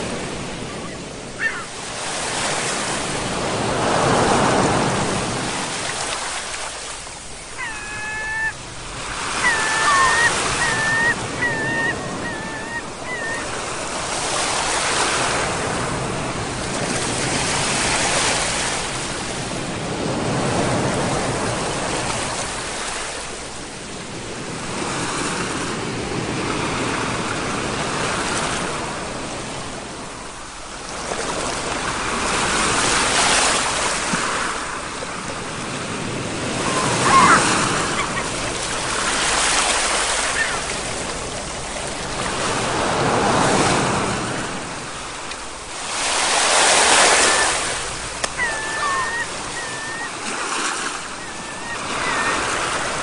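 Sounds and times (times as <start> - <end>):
waves breaking: 0.0 - 53.0
high wavering call: 9.4 - 13.5, 48.3 - 50.2.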